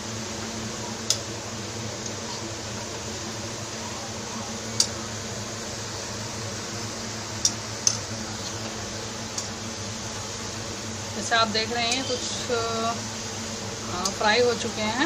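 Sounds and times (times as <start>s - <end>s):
potatoes sizzling in hot oil: 5.7s - 15.0s.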